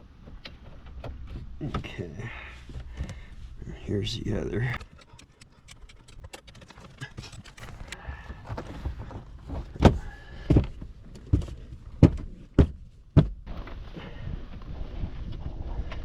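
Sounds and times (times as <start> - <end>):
plastic parts clicking: 4.8 - 10.0.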